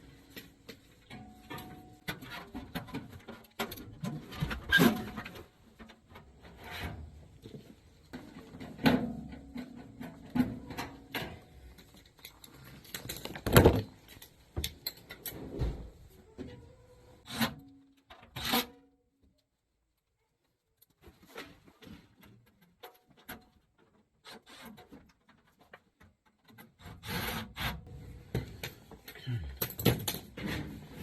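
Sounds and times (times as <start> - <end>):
parts and tools clicking and rattling: 0.1 - 15.8, 20.8 - 27.0, 28.2 - 31.0.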